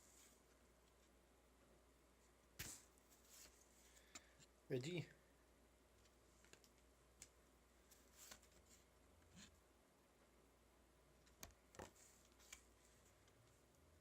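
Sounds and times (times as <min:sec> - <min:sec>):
trading cards being flipped: 0:07.9 - 0:08.8, 0:11.4 - 0:12.8.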